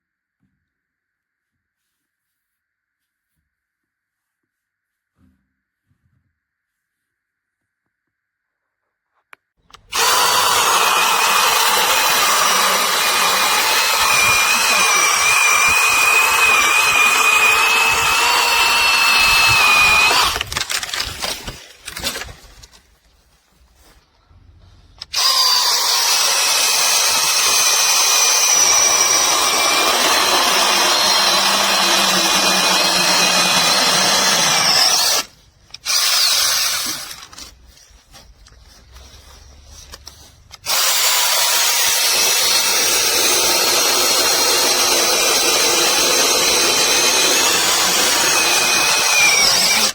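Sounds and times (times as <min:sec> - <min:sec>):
mini chainsaw cutting wood: 0:09.7 - 0:22.2, 0:25.0 - 0:37.4, 0:40.6 - 0:49.9.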